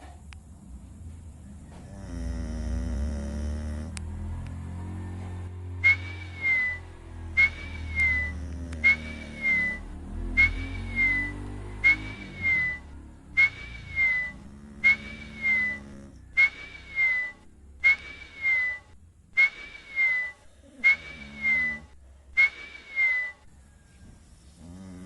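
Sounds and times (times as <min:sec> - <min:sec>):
nose whistle while snoring: 0:01.9 - 0:04.0, 0:05.8 - 0:23.8, 0:24.6 - 0:25.0.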